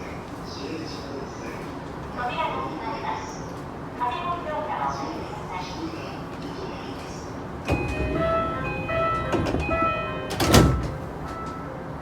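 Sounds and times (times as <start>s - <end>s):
train background noise: 0.0s - 12.0s
electronic door chime: 7.7s - 11.8s.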